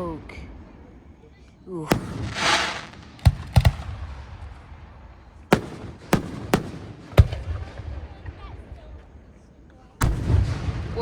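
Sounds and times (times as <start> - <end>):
firework shell hiss: 1.9 - 3.2
firework shells bursting: 1.9 - 4.1, 5.5 - 7.7.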